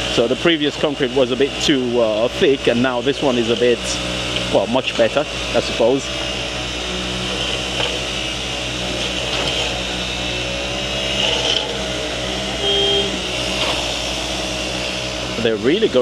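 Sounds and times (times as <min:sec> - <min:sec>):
machine engine running under load: 0:00.0 - 0:16.0
short high-pitched tone: 0:12.4 - 0:13.7.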